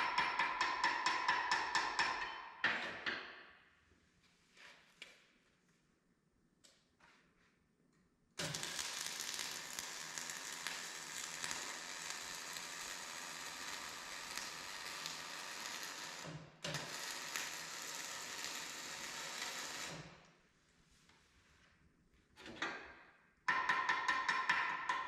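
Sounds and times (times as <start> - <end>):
welding arc crackling and sizzling: 8.4 - 20.2.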